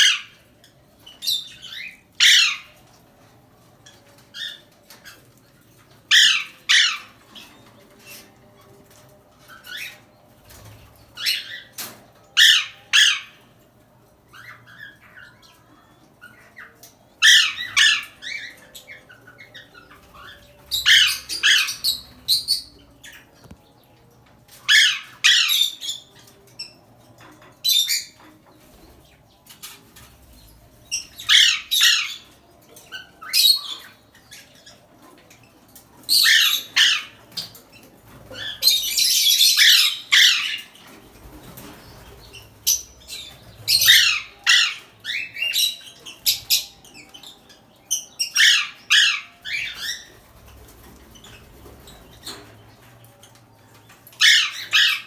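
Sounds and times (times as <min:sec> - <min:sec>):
parrot squawking: 0:01.3 - 0:02.8, 0:06.1 - 0:07.2, 0:17.2 - 0:18.6, 0:19.5 - 0:22.7, 0:24.7 - 0:26.0, 0:31.2 - 0:32.3, 0:36.1 - 0:37.2, 0:38.4 - 0:40.8, 0:42.7 - 0:46.8, 0:48.2 - 0:50.1, 0:54.1 - 0:55.0.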